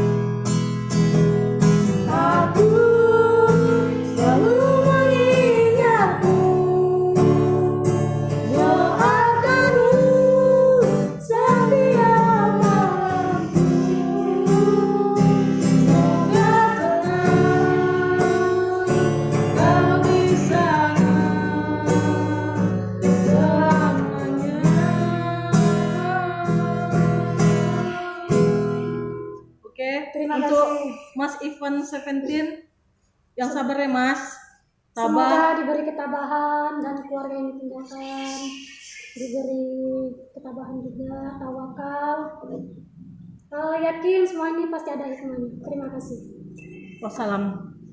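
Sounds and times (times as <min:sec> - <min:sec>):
strummed acoustic guitar: 0:00.0 - 0:29.5
person singing slow song: 0:02.0 - 0:29.4, 0:35.0 - 0:44.3.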